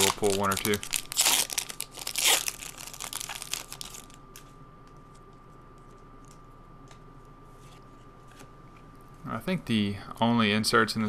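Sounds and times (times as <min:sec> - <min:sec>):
plastic wrapper crinkling: 0:00.0 - 0:06.4.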